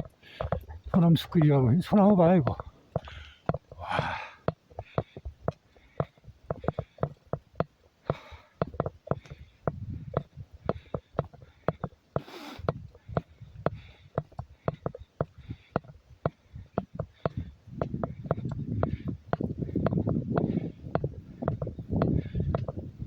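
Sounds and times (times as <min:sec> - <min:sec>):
footsteps on forest trail: 0:00.0 - 0:23.0
breathy rushes: 0:02.9 - 0:07.3, 0:08.0 - 0:19.8.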